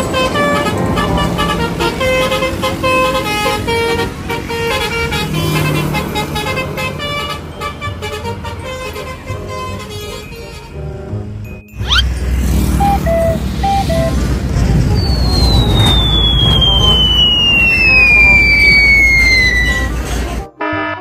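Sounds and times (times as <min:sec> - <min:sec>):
bus air horn melody: 0:00.0 - 0:11.0, 0:16.5 - 0:21.0
passing vehicle rumble: 0:00.0 - 0:20.4.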